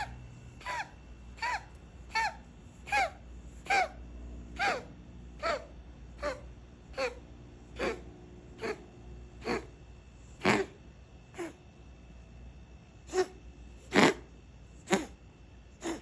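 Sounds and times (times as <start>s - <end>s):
cat coughing: 7.8s - 8.0s, 8.6s - 8.8s, 9.4s - 9.7s, 10.4s - 11.6s, 13.1s - 15.2s, 15.8s - 16.0s.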